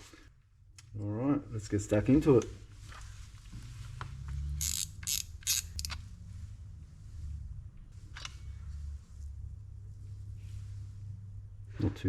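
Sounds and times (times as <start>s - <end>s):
low steady hum: 0.0s - 12.0s
small parts clicking and scraping: 4.5s - 6.0s.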